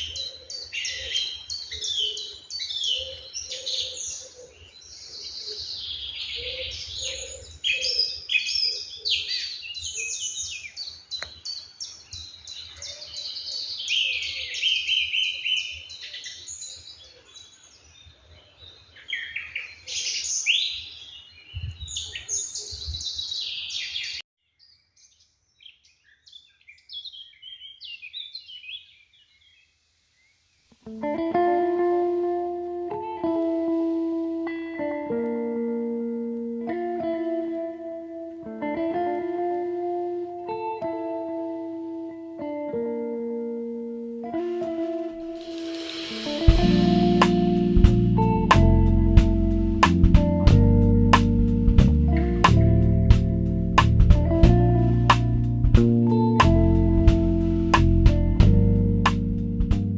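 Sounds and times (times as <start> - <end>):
low repeated bird notes: 0.0 - 16.8, 30.3 - 59.9
songbirds singing and chirping: 0.0 - 59.6.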